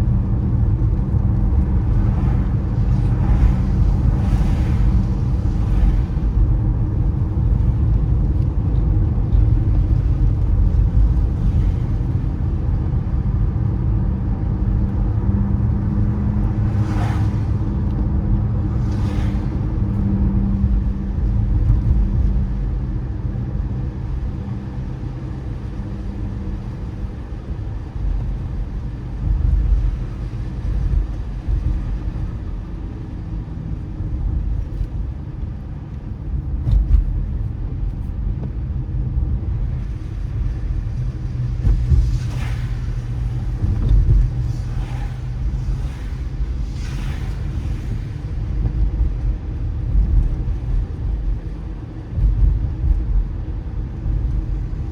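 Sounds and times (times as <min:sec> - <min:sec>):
tyre noise on wet road: 0:00.0 - 0:54.9
swishes: 0:41.5 - 0:48.4.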